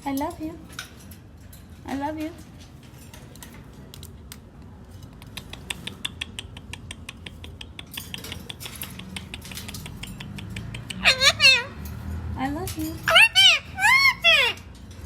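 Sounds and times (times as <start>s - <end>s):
parrot clicking: 5.0s - 11.6s.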